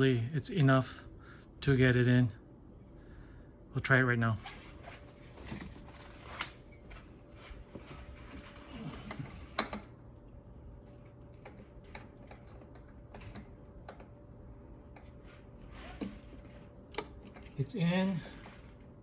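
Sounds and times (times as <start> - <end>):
clicks and knocks of pipe fitting: 9.1 - 9.9, 11.4 - 14.1.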